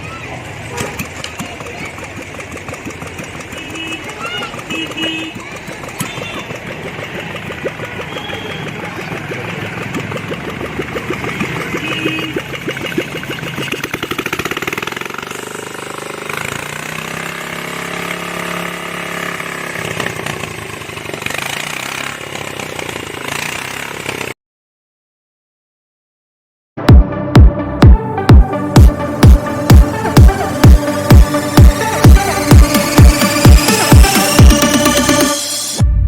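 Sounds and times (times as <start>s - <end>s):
motorcycle engine running: 0.1s - 24.4s, 26.8s - 36.0s.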